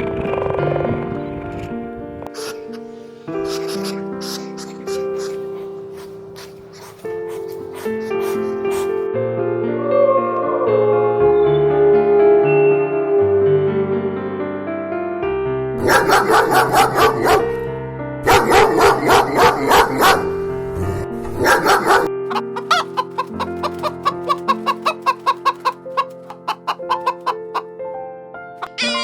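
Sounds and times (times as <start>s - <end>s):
chickens clucking: 0.0s - 9.0s, 15.8s - 17.6s, 18.3s - 27.7s, 28.6s - 29.0s
background music: 0.0s - 29.0s.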